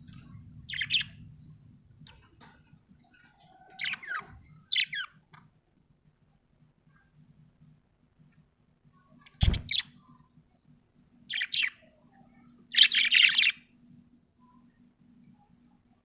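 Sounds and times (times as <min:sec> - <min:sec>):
budgerigar chirping: 0:03.7 - 0:05.2, 0:11.3 - 0:11.8, 0:12.7 - 0:13.6.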